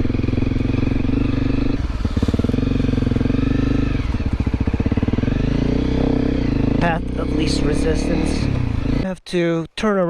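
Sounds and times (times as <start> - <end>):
motorcycle engine chugging: 0.0 - 9.2.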